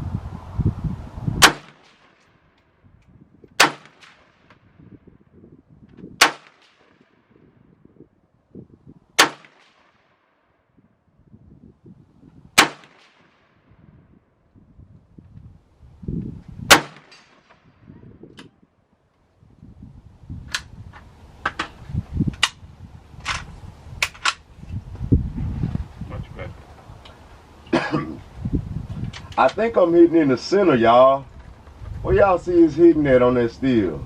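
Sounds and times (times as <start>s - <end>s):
rifle shots: 1.4s - 2.3s, 3.6s - 4.6s, 6.2s - 7.2s, 9.2s - 10.2s, 12.6s - 13.6s, 16.7s - 17.6s.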